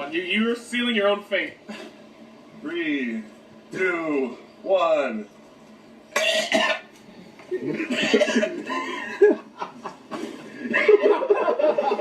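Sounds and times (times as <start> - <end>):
people chuckling: 7.5 - 12.0.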